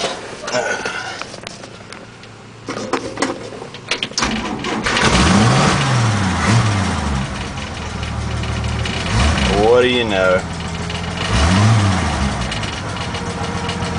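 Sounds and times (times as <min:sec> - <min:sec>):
sharp clicks and knocks: 0:02.7 - 0:06.0, 0:07.3 - 0:09.6, 0:10.4 - 0:11.4, 0:12.4 - 0:13.9
engine idling: 0:03.7 - 0:13.9
engine starting and revving: 0:04.2 - 0:13.9.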